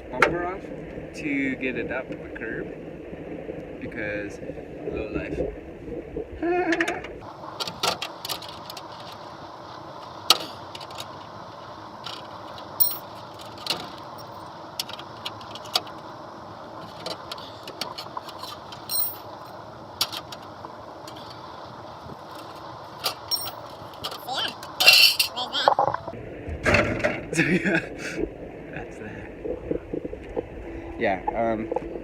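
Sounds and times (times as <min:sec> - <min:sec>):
wrench clinking on bolts: 0:12.8 - 0:13.0, 0:23.1 - 0:24.2.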